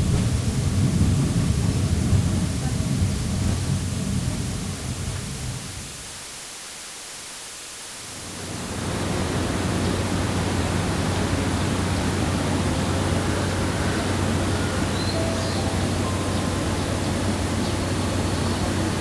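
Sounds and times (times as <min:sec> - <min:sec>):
traffic rushing noise with hum: 0:00.0 - 0:05.9, 0:08.3 - 0:19.0.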